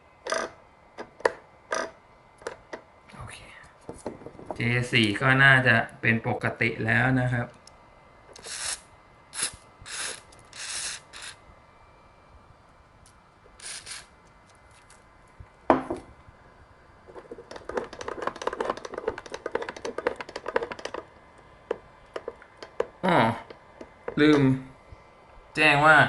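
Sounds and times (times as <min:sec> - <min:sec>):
aerosol spray hissing: 0:08.4 - 0:11.4
clicking and rattling handling noise: 0:17.1 - 0:24.4.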